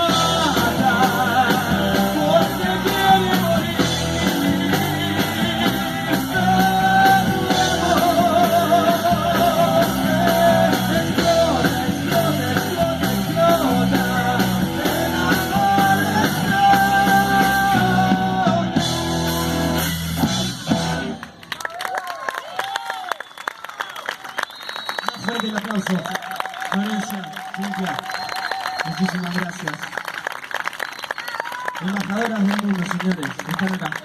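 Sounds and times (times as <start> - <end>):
person singing with vibrato: 0.0 - 19.1
rock band playing: 0.0 - 21.3.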